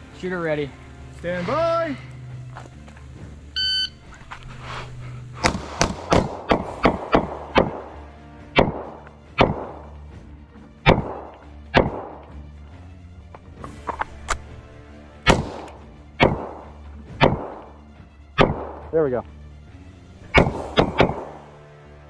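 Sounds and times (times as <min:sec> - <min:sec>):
shot timer beep: 0:03.6 - 0:04.0
pistol shots: 0:05.4 - 0:10.0, 0:10.8 - 0:12.4, 0:15.2 - 0:17.8, 0:18.4 - 0:18.9, 0:20.4 - 0:21.7.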